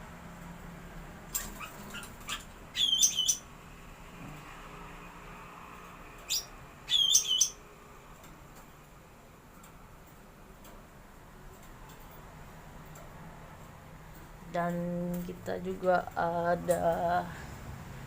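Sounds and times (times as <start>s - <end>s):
songbird ringing phrases: 2.8s - 3.4s, 6.3s - 7.6s.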